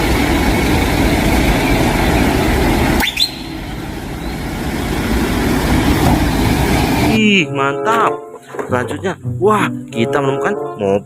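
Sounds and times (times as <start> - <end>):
cement mixer truck engine running: 0.0 - 7.2
rising squeal: 0.0 - 7.2.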